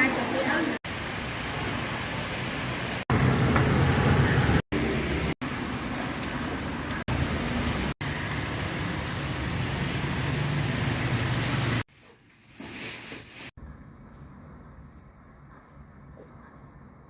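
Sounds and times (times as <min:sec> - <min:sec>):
rain: 0:00.0 - 0:11.9.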